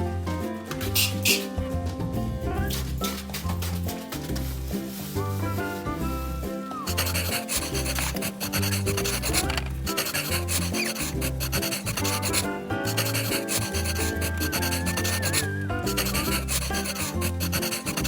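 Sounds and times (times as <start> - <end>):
background music with bass line: 0.0 - 18.0
scrubbing strokes: 6.9 - 18.0.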